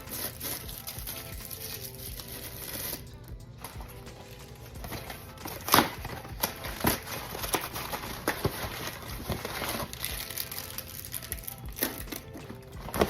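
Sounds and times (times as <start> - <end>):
background music: 0.0 - 13.0
wrapper crinkling: 0.0 - 13.0
packages knocking: 3.6 - 13.0.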